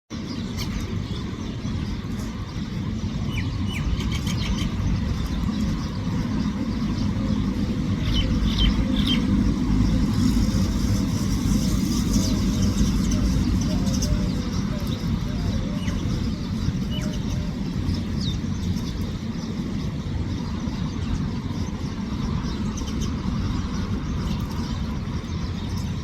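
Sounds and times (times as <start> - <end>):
low rumble of road traffic: 0.1 - 26.0
sparrow chirps: 0.1 - 26.0.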